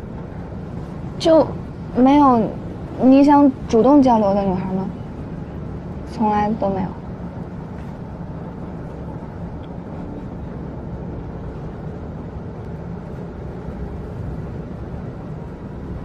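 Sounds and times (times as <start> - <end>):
train carriage rumble: 0.0 - 16.0.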